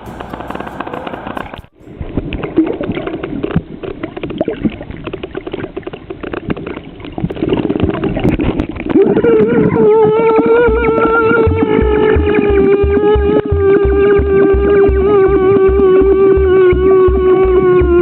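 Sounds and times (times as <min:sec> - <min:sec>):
dense crackling: 0:00.0 - 0:15.0
underwater sloshing: 0:00.0 - 0:15.0
steady held tone: 0:09.0 - 0:18.0.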